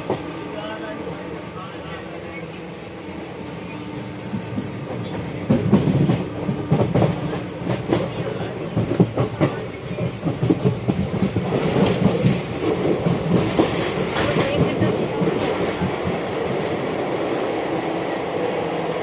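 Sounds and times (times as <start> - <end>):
train wheels clattering: 3.7 - 17.2.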